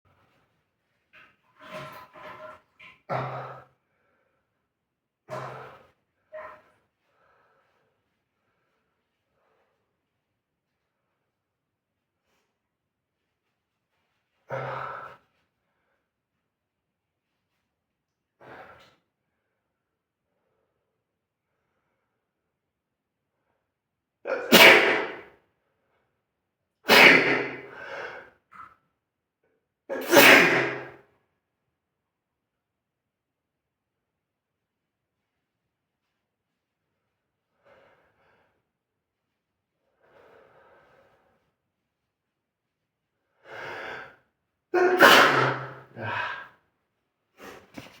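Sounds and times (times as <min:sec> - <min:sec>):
person sneezing: 0:24.3 - 0:25.3, 0:26.9 - 0:28.2, 0:29.9 - 0:31.0, 0:44.8 - 0:46.5
voiced breath out: 0:46.0 - 0:46.6.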